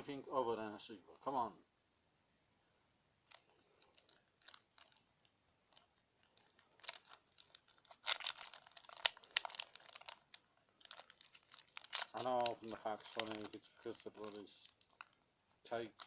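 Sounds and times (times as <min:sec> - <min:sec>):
foil wrapper crinkling: 0:03.3 - 0:15.2.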